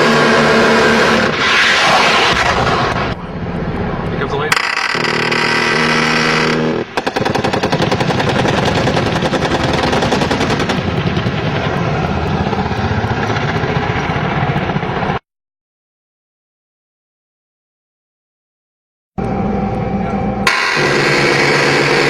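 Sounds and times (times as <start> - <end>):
helicopter engine: 0.0 - 15.2, 19.2 - 22.0
steady pitched tone: 2.8 - 7.0, 19.2 - 22.0
automatic gun firing rapidly: 5.8 - 10.9.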